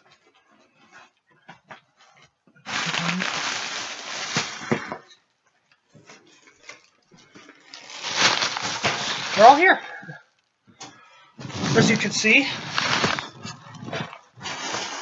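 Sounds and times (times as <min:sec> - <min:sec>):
packaging rustling and crinkling: 0:02.7 - 0:05.0, 0:06.4 - 0:09.9, 0:11.5 - 0:15.0.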